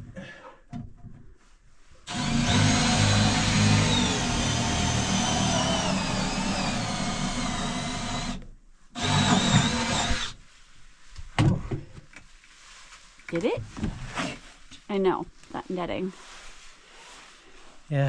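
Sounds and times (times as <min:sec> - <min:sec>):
electric drill running: 0:02.1 - 0:08.4, 0:09.0 - 0:10.4.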